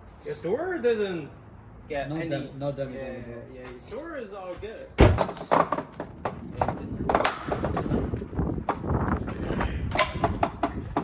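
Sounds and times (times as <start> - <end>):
knocks and clatter on car parts: 5.0 - 11.0.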